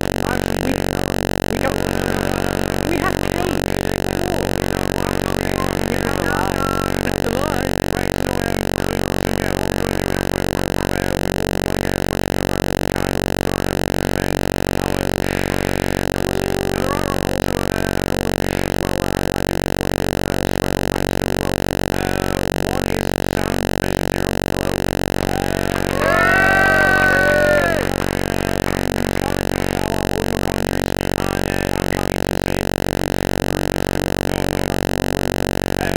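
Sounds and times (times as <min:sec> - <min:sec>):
loud buzzing drone: 0:25.2 - 0:28.5.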